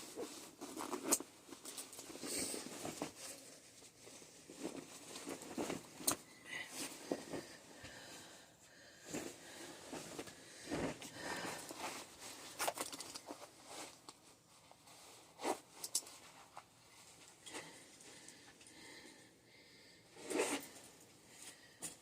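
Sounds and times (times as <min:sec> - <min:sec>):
handling clicks and rustles: 0:09.9 - 0:14.3.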